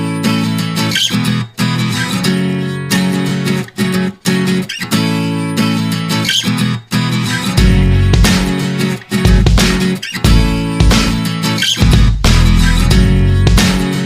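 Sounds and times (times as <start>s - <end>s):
strummed acoustic guitar: 0.0s - 14.0s
deep bass: 7.6s - 8.4s, 10.3s - 11.2s, 11.8s - 13.8s.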